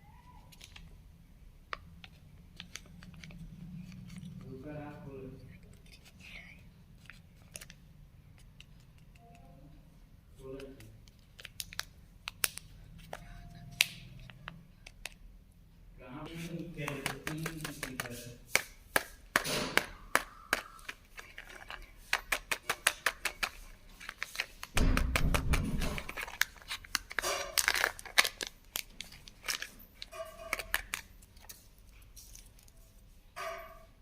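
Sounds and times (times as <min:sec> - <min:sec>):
wrapper crinkling: 0:11.0 - 0:14.3, 0:16.4 - 0:33.0
plastic egg clicking and crackling: 0:16.8 - 0:31.5.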